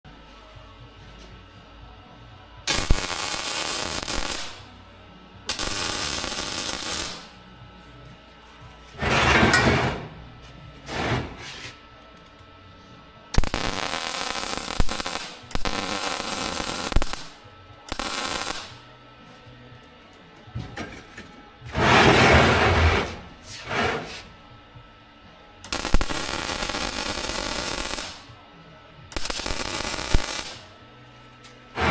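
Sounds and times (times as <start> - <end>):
arc welding crackling: 2.6 - 10.2, 13.3 - 19.0, 25.6 - 28.4, 29.1 - 31.9.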